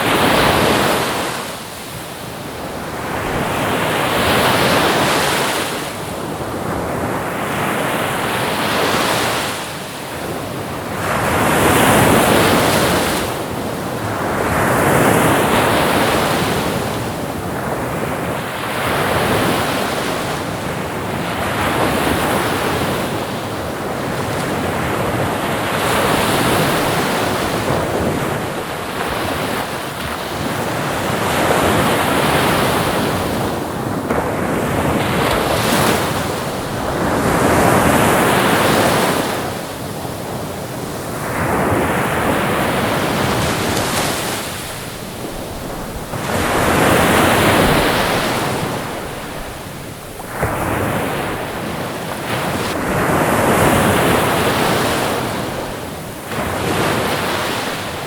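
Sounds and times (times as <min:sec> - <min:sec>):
ocean waves breaking: 0:00.0 - 0:58.0.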